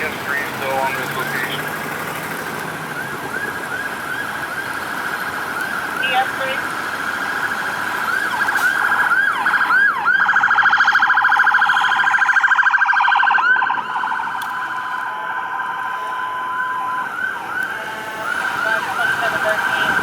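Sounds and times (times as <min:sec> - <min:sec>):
emergency vehicle sirens: 0:00.0 - 0:20.0.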